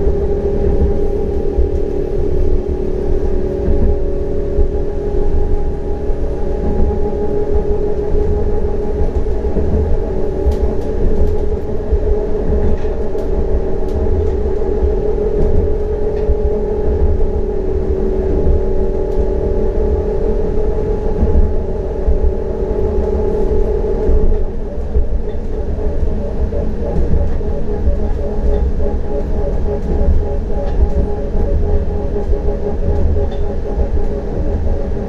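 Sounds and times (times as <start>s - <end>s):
tram motors whining: 0.0s - 35.0s
wheels rumbling on rails: 0.0s - 35.0s.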